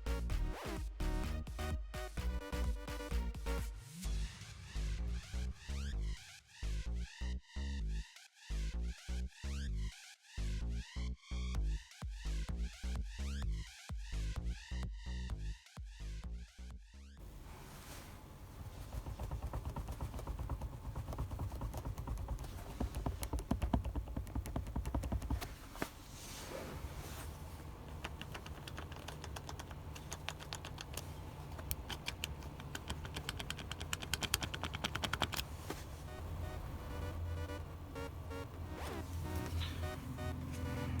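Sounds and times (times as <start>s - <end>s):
steady low rumble: 17.2s - 41.0s
plastic trim rattling and clicking: 27.8s - 35.5s.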